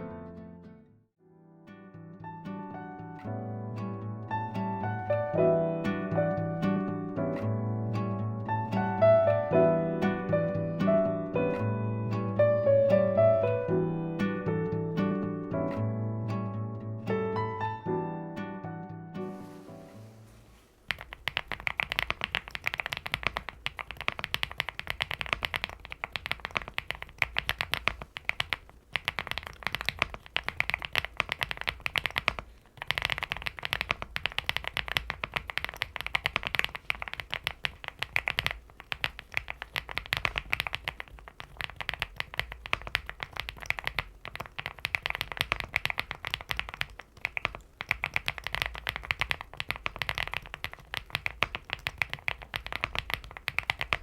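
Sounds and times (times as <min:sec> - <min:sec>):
mechanical keyboard typing: 0:20.9 - 0:54.0.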